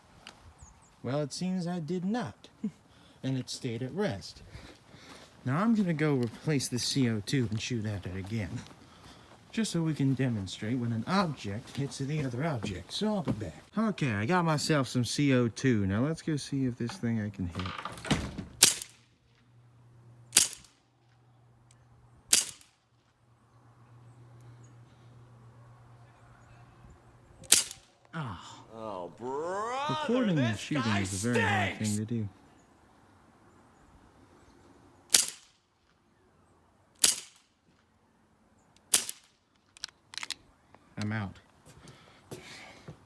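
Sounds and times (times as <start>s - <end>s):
bb gun shots with hissing: 18.6s - 19.0s, 20.3s - 20.7s, 22.3s - 22.7s, 27.4s - 27.9s, 35.1s - 35.5s, 37.0s - 37.4s
bb gun cracks: 18.6s - 19.1s, 20.3s - 20.8s, 22.3s - 22.9s, 27.4s - 28.1s, 35.1s - 36.0s, 37.0s - 37.9s, 38.8s - 40.4s.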